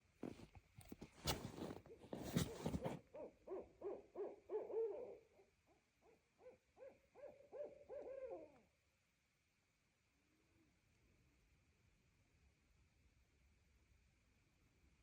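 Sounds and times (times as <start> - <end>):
rustling: 0.3 - 3.0
owls hooting: 3.2 - 5.4, 6.0 - 8.6.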